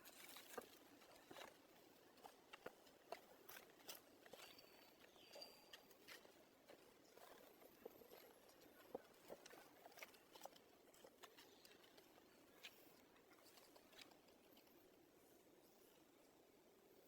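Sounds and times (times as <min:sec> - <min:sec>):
faint clicks and rustles: 0:00.0 - 0:17.0.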